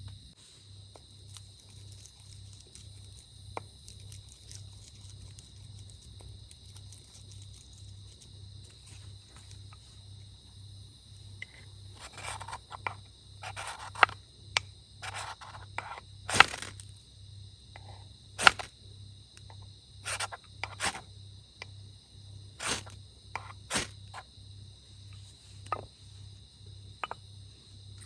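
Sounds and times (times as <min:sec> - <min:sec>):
insects chirring: 0:00.0 - 0:28.0
camp gear scraping and clicking: 0:11.4 - 0:14.2, 0:15.0 - 0:16.9, 0:17.8 - 0:18.7, 0:20.0 - 0:21.1, 0:22.6 - 0:24.3.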